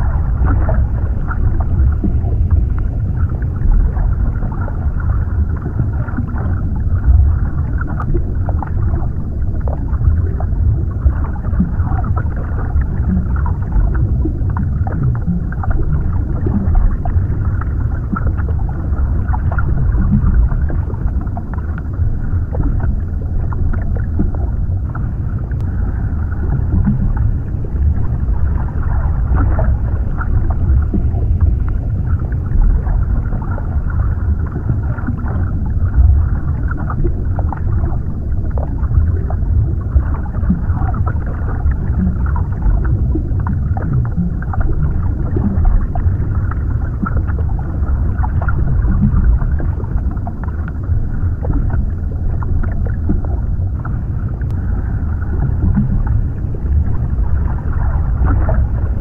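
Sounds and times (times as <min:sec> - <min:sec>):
muffled underwater rumble: 0:00.0 - 0:59.0
small underwater clicks: 0:48.3 - 0:54.6.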